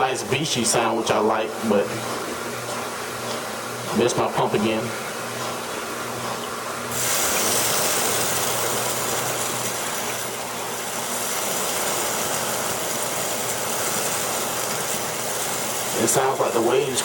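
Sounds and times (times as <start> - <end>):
water pouring and splashing: 6.9 - 17.0.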